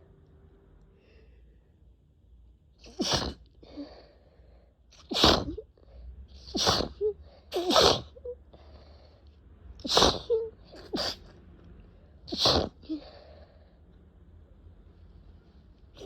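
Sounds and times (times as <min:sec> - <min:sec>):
person sneezing: 0:02.8 - 0:03.5, 0:05.0 - 0:05.6, 0:06.5 - 0:08.2, 0:09.8 - 0:11.3, 0:12.3 - 0:13.0.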